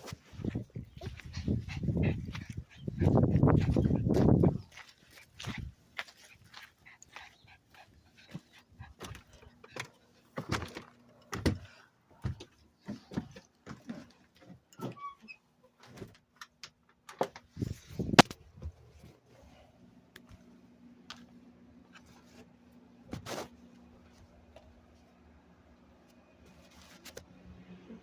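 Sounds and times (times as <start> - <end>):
dog sounds: 0.4 - 10.5.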